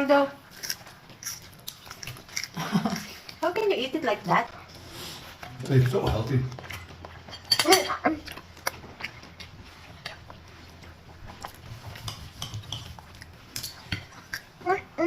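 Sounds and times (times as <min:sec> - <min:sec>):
cutlery clinking on plates: 0:05.7 - 0:08.0, 0:11.9 - 0:14.4.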